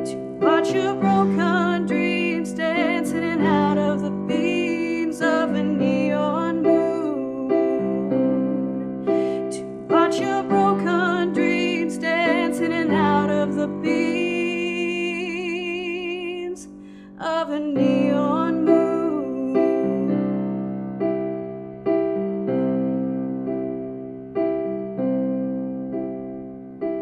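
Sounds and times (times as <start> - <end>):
woman singing a slow ballad: 0.0 - 20.7.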